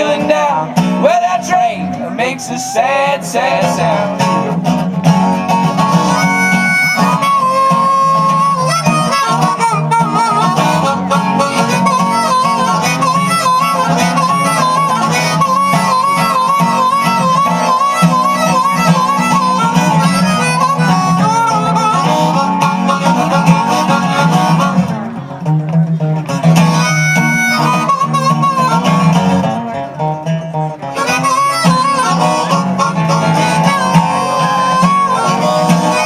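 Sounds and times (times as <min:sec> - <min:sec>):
guitar accompaniment: 0:00.0 - 0:36.0
harmonica melody with trills: 0:00.0 - 0:36.0.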